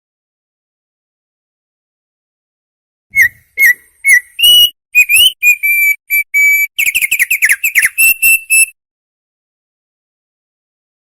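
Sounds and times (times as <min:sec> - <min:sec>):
bird singing whistled notes: 0:03.2 - 0:08.8.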